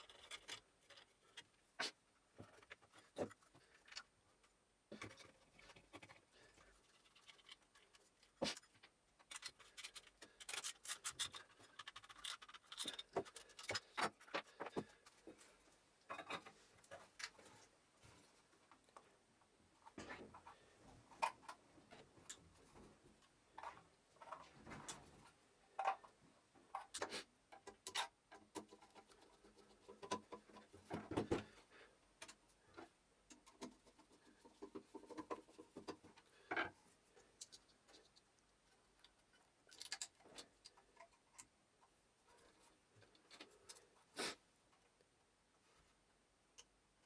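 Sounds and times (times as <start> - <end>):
small motor parts being handled: 6.8 - 14.5.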